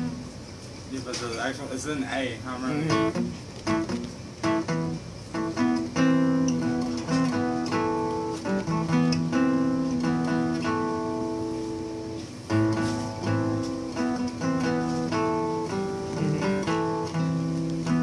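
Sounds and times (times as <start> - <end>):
acoustic guitar chords: 0.0 - 1.2, 2.4 - 18.0.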